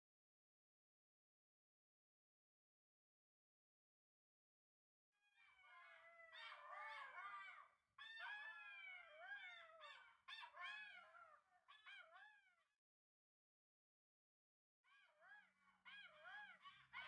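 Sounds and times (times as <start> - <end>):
animals howling and yelping: 5.3 - 12.7, 14.9 - 17.0.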